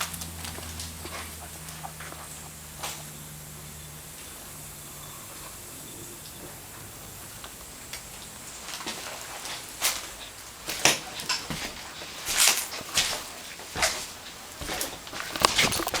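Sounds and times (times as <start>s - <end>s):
footsteps crunching on dry ground: 0.0s - 4.4s, 7.5s - 16.0s
steady hiss: 0.0s - 16.0s.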